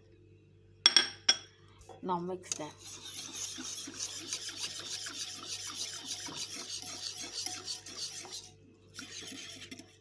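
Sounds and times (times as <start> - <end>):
whisk scraping a bowl: 2.6 - 10.0.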